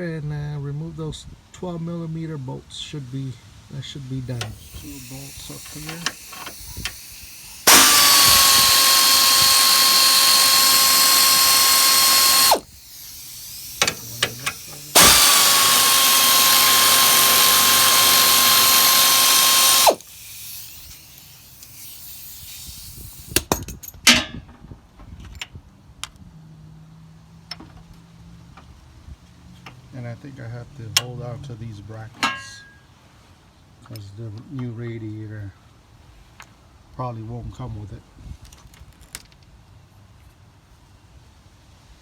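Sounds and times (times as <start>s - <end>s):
power drill whining: 4.4s - 21.8s.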